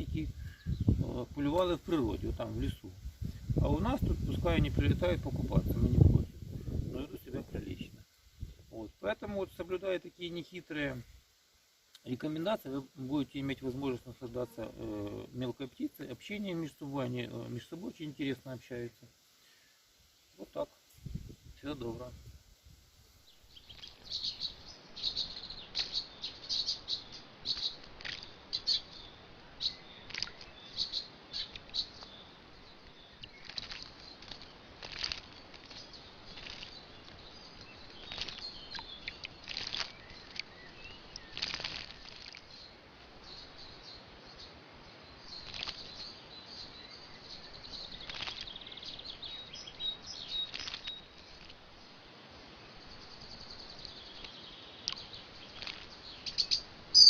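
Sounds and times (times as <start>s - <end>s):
small songbirds chirping: 0.0s - 57.0s
wing flutters: 27.5s - 28.7s, 30.0s - 30.5s, 33.2s - 40.5s, 41.2s - 42.5s, 45.4s - 46.0s, 48.0s - 48.5s, 50.4s - 51.6s, 55.5s - 57.0s.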